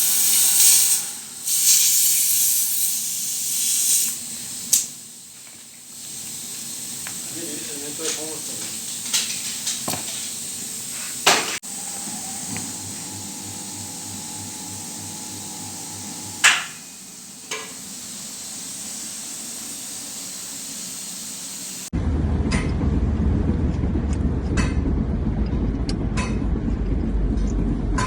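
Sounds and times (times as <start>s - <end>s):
steady hiss: 0.0s - 21.9s
steady low rumble: 21.9s - 28.0s.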